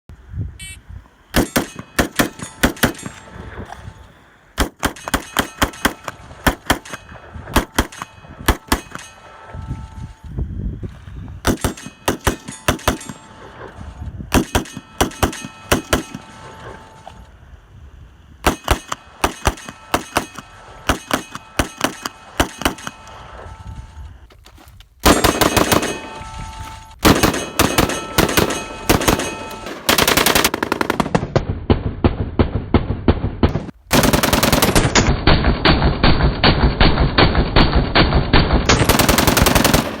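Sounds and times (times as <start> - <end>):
rifle single shots: 11.4 - 17.2, 18.4 - 23.7, 25.0 - 31.4
rapid automatic gunfire: 25.0 - 26.2, 27.0 - 40.0.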